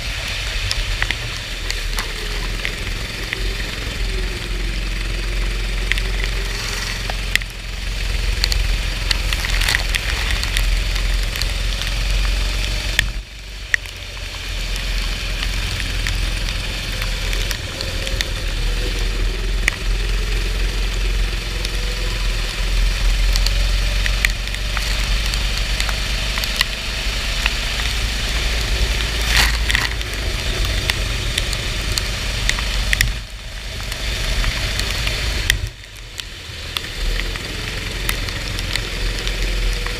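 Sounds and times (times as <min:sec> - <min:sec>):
constant rush of noise: 0:00.0 - 0:39.9
racing kart engine: 0:00.0 - 0:39.9
scattered clicks: 0:05.5 - 0:14.4, 0:23.3 - 0:26.8, 0:28.6 - 0:39.9.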